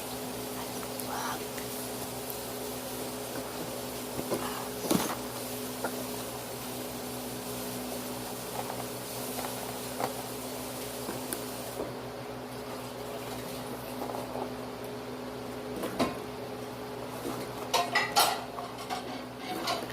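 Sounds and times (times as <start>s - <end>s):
appliance hum: 0.0s - 19.9s.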